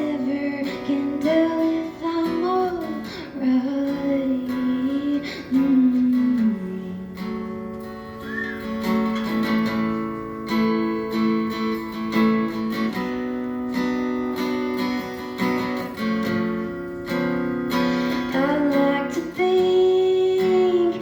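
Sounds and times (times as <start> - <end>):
person singing a ballad: 0.0 - 7.6, 18.2 - 21.0
acoustic guitar chords: 0.0 - 21.0.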